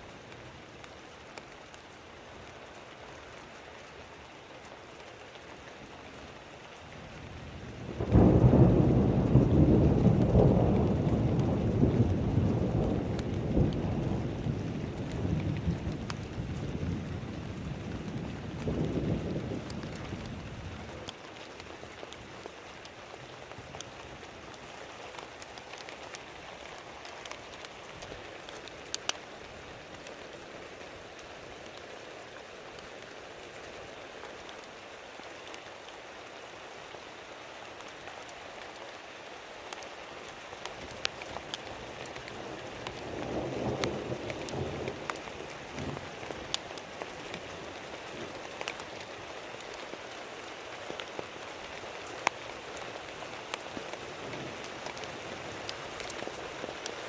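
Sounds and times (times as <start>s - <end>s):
heavy rain: 0.0s - 57.0s
distant thunder rumble: 7.8s - 21.0s, 42.5s - 48.3s
single raindrop ticks: 8.0s - 17.0s, 17.9s - 23.0s, 23.7s - 29.3s, 39.7s - 39.9s, 40.6s - 50.2s, 50.8s - 57.0s.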